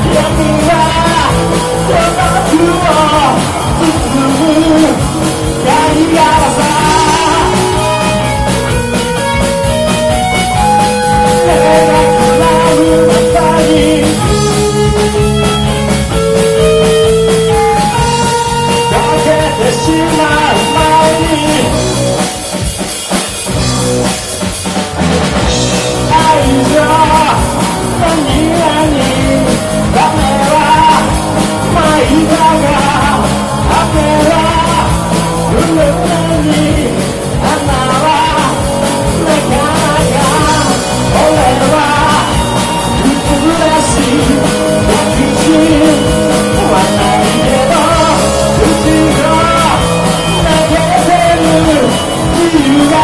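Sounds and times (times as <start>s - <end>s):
person singing: 0.0s - 15.4s, 16.1s - 22.6s, 25.8s - 53.0s
rock band playing: 0.0s - 53.0s.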